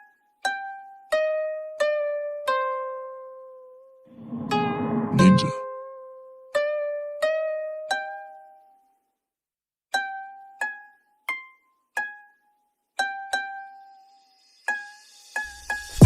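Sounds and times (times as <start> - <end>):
plucked string melody: 13.0 - 14.1.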